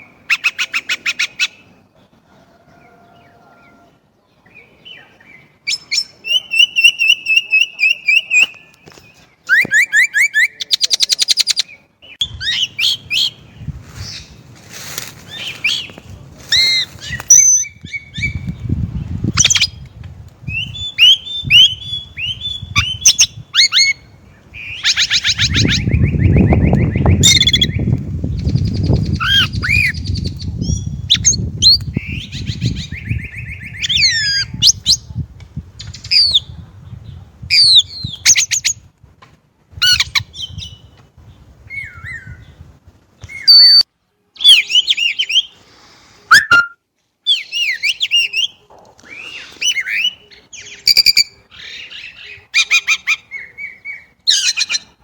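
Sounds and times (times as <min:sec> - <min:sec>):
blackbirds calling: 0:04.5 - 0:35.2, 0:44.4 - 0:55.0.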